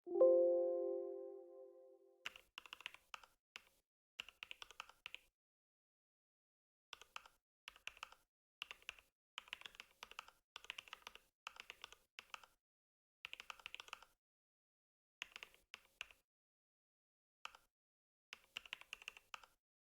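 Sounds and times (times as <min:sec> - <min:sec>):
mechanical keyboard typing: 0:13.4 - 0:14.0.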